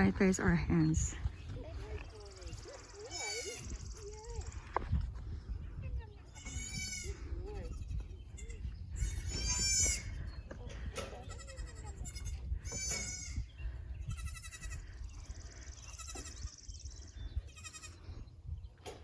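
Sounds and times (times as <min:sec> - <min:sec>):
goat kids bleating: 0:02.8 - 0:04.0, 0:06.3 - 0:16.7, 0:17.4 - 0:18.1.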